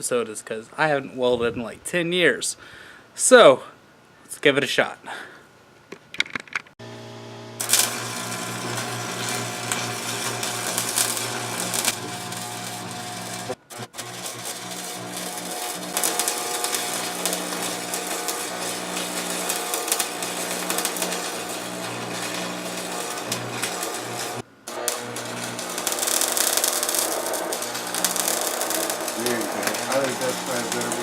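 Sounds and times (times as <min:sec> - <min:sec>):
welder humming: 0:06.8 - 0:31.0
welding arc crackling and sizzling: 0:06.8 - 0:31.0.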